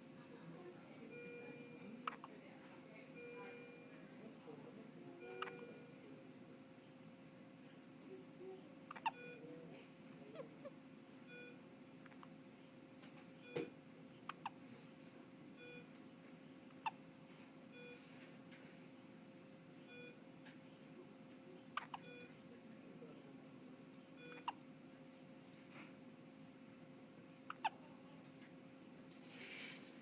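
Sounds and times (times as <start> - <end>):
faint electronic beep: 1.1 - 2.3, 3.1 - 4.0, 5.2 - 6.0, 8.9 - 9.6, 11.3 - 12.2, 15.6 - 15.9, 17.7 - 18.1, 19.8 - 22.4, 24.0 - 24.6.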